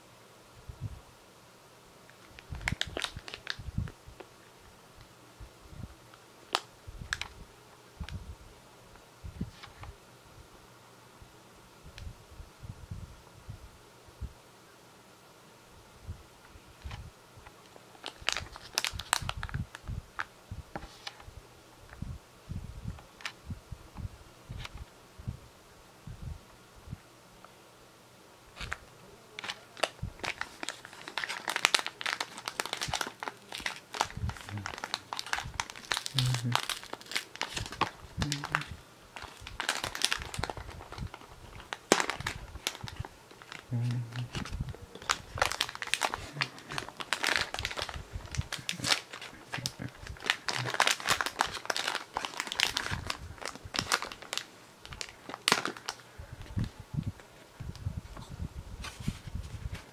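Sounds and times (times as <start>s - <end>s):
packaging crinkling: 2.2s - 3.6s, 17.9s - 20.3s, 28.6s - 28.8s, 29.4s - 56.5s.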